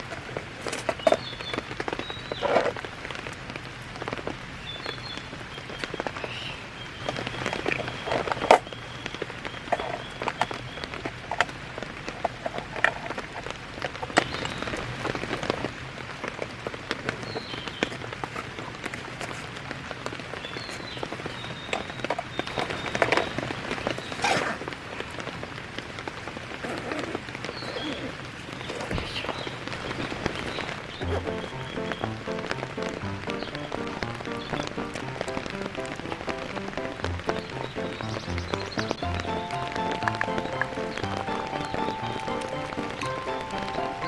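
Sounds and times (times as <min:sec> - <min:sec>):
steady rain: 0:00.0 - 0:44.0
raindrops tapping: 0:28.5 - 0:44.0.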